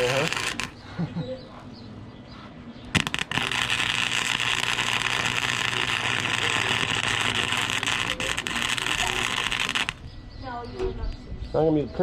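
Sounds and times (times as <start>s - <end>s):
welder arc crackling: 0.0s - 0.8s, 2.9s - 10.1s.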